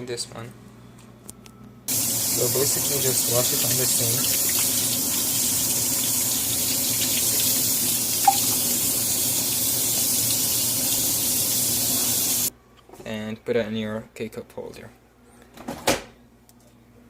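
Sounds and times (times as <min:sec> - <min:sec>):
sink faucet running: 0:01.9 - 0:12.5.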